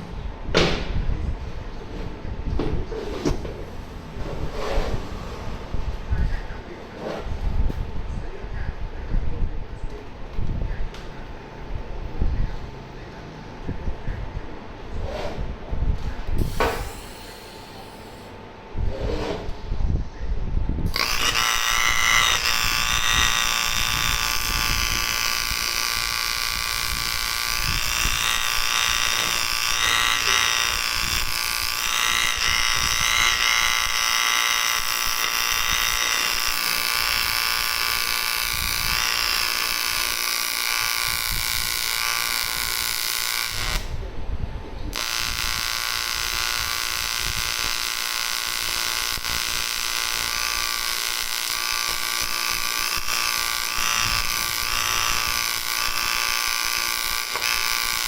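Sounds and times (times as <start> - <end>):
welding arc buzzing: 16.4 - 18.4, 20.8 - 44.0, 44.9 - 58.0.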